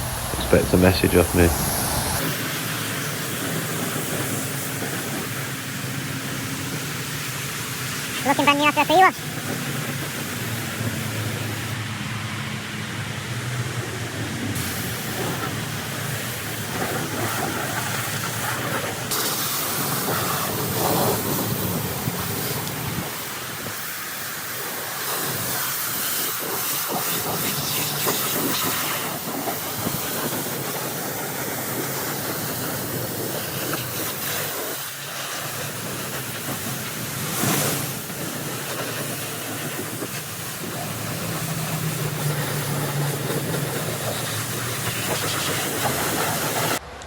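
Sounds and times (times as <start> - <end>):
pressure washer spray hissing: 0.0 - 2.3, 14.6 - 15.5.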